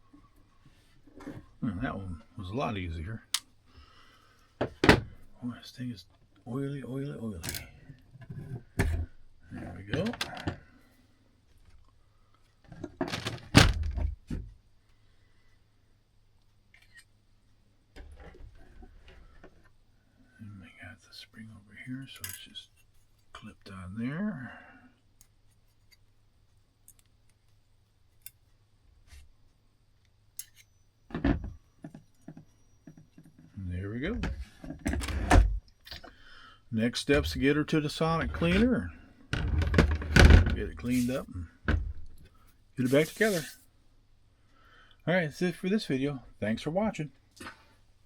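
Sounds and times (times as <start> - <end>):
small metallic clicks of tools: 30.4 - 30.7.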